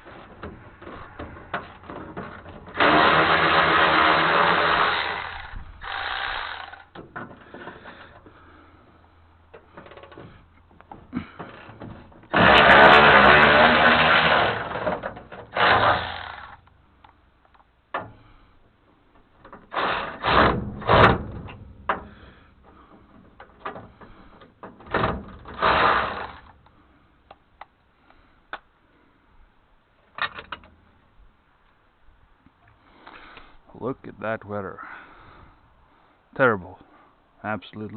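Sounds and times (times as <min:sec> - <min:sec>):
power ratchet whirring: 0:02.7 - 0:07.0, 0:12.3 - 0:16.8, 0:19.7 - 0:21.1, 0:25.4 - 0:26.6.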